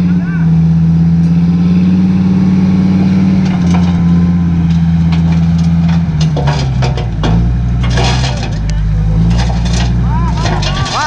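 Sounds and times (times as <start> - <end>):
truck engine running: 0.0 - 11.0
knocks and rattles: 2.9 - 11.0.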